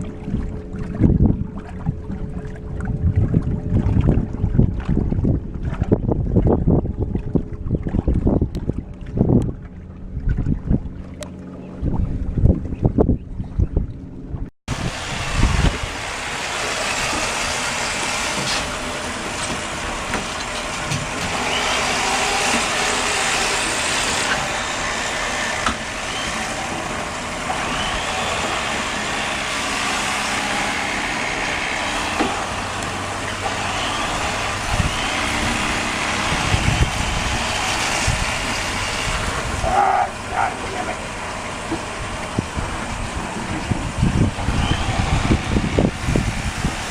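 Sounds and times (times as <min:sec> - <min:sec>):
engine running: 0:00.0 - 0:46.9
wide rushing noise: 0:14.7 - 0:46.9.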